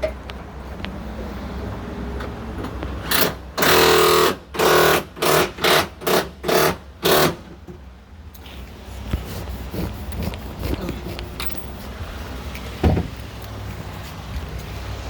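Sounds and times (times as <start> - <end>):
pneumatic impact wrench rattling: 3.0 - 7.5.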